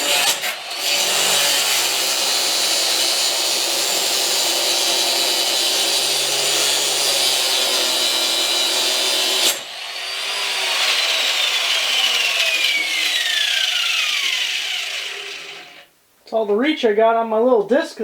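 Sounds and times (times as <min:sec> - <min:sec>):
angle grinder grinding steel: 0:00.0 - 0:01.9, 0:06.7 - 0:15.9.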